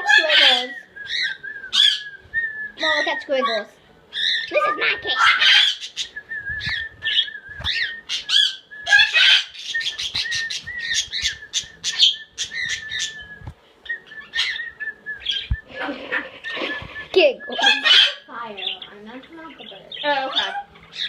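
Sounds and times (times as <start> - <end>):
cockatiel chirping and whistling: 4.2 - 15.6, 17.5 - 18.2.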